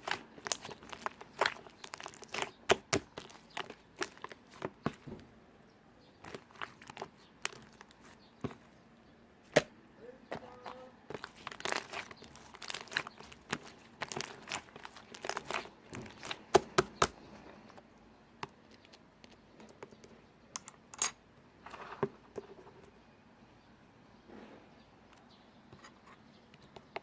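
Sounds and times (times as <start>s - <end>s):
slime squished and stretched: 0.0s - 5.1s, 6.2s - 8.6s, 11.1s - 17.2s.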